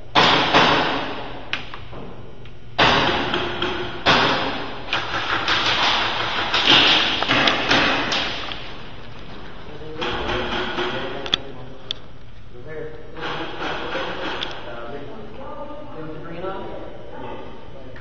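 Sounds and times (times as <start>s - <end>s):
airsoft gunshots: 0.1s - 1.4s.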